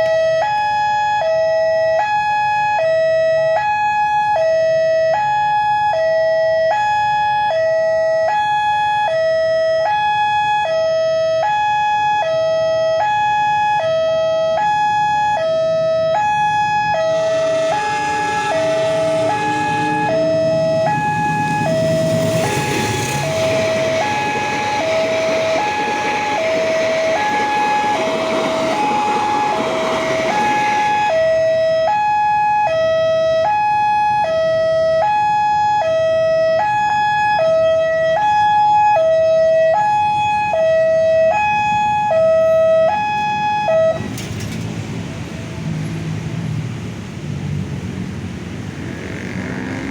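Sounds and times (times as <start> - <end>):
two-tone crossing warning siren: 0.0 - 49.9
train rushing past: 16.2 - 31.9, 43.3 - 49.9.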